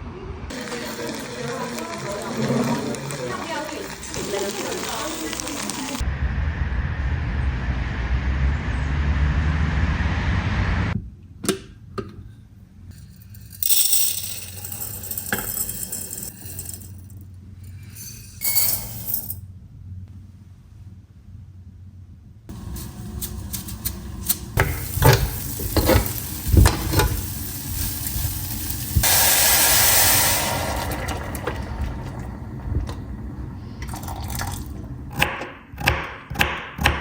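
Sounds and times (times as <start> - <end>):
short hissing bursts: 22.5 - 32.1
kitchenware clinking and knocking: 24.6 - 27.3.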